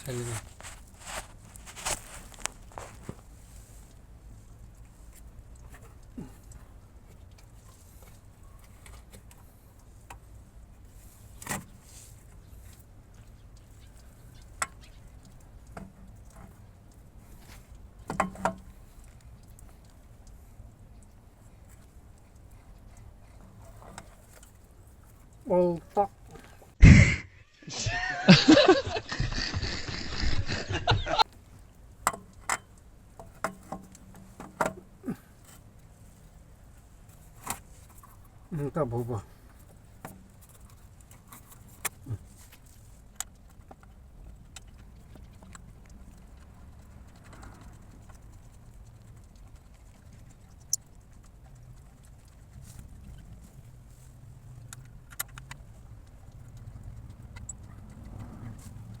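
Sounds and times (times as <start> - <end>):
short loud noise burst: 26.8 - 27.4.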